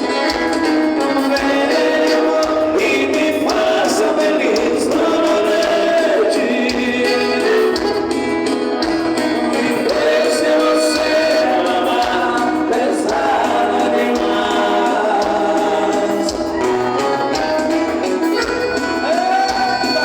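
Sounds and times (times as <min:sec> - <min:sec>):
waltz song with singing voices: 0:00.0 - 0:20.0.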